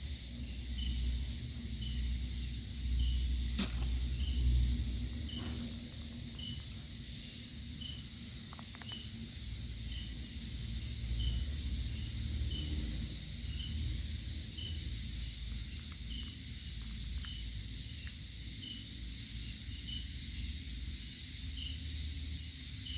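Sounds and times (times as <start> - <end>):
high insect drone: 0.0 - 22.9.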